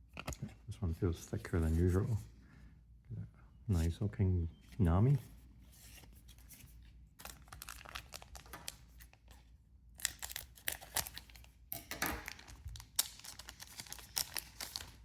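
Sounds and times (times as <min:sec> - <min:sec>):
cards being handled: 0:00.0 - 0:02.2, 0:04.7 - 0:09.4
wrapper tearing: 0:07.2 - 0:09.4, 0:10.0 - 0:11.6, 0:12.2 - 0:15.0
foil wrapper crinkling: 0:07.2 - 0:11.6, 0:12.2 - 0:15.0.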